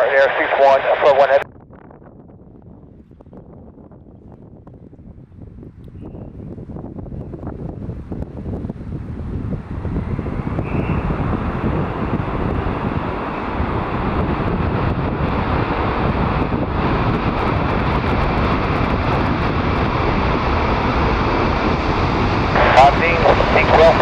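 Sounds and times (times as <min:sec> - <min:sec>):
jet engines roaring: 0:00.0 - 0:01.4, 0:08.4 - 0:24.0
wind buffeting microphone: 0:01.3 - 0:24.0.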